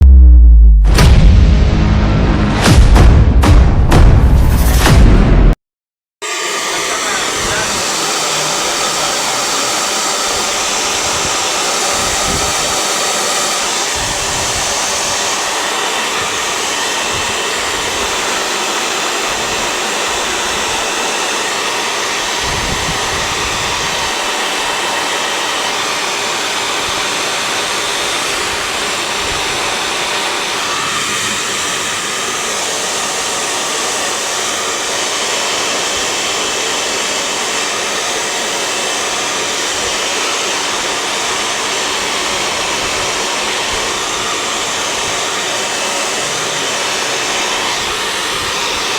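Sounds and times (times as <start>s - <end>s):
short low rumbles: 0.0s - 5.6s
hair dryer blowing: 6.2s - 48.9s.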